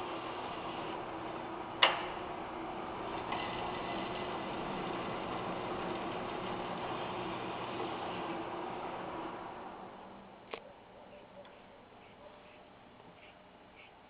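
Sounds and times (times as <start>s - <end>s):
cutting machine humming: 0.0s - 10.2s.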